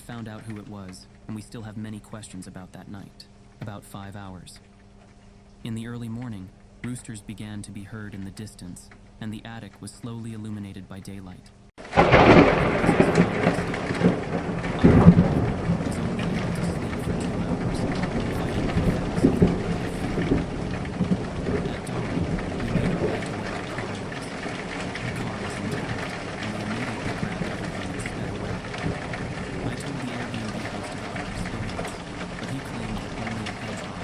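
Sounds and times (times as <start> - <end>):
thunder rumbling: 0.0 - 3.1, 11.8 - 34.0
steady rain: 0.0 - 10.8, 11.8 - 34.0.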